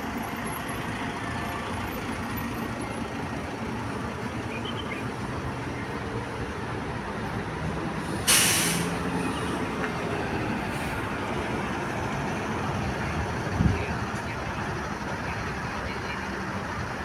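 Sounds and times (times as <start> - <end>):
bus engine running: 0.0 - 17.0
air brake hiss: 8.1 - 9.0.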